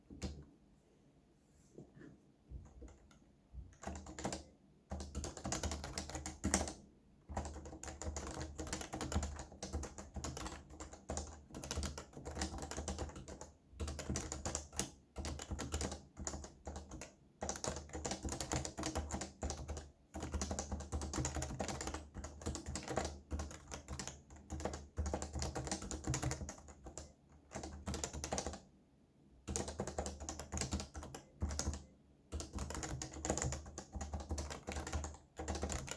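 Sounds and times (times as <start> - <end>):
fast typing on keyboard: 2.7 - 28.7, 29.5 - 35.9.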